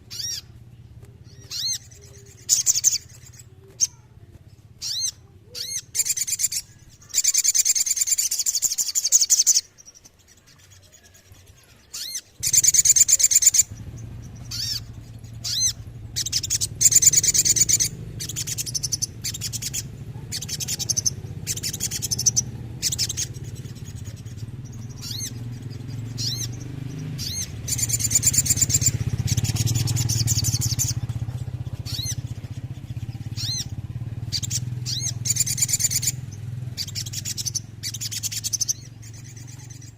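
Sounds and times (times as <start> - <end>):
bird singing high-pitched trills: 0.0 - 4.2, 4.8 - 39.9
steady low hum: 12.0 - 39.9.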